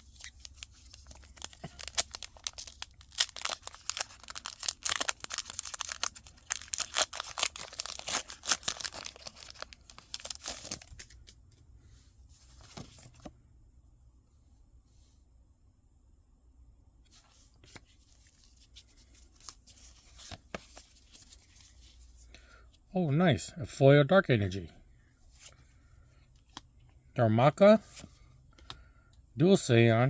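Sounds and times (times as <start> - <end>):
foil wrapper crinkling and tearing: 0.0 - 11.2.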